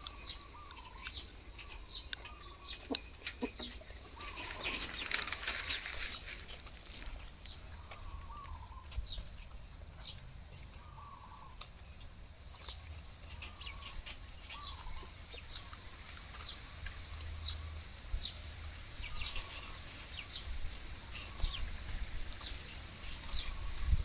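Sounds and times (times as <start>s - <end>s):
chickens clucking softly: 0.0s - 7.0s
chicks peeping: 0.0s - 17.6s.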